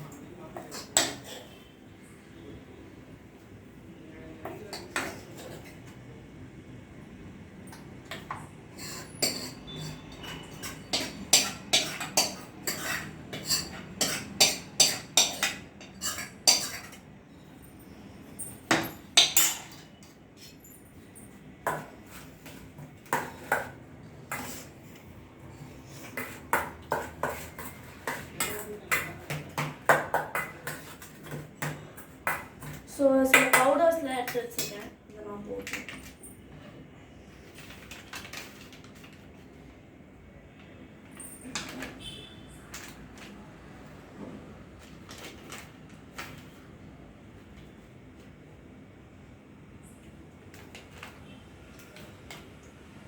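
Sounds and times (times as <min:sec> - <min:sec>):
spoon scraping cooking pan: 0:08.3 - 0:17.0, 0:21.8 - 0:32.8.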